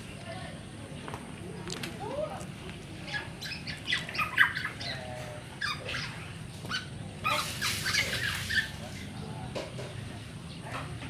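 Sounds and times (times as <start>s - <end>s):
bird chicks begging calls: 3.1s - 8.8s.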